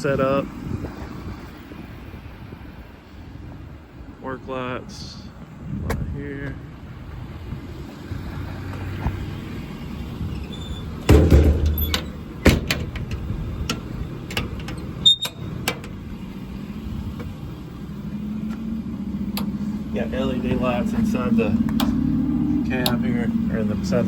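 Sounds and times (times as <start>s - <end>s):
truck door heavy thump: 10.7s - 16.0s
door latch clicks: 11.1s - 16.0s.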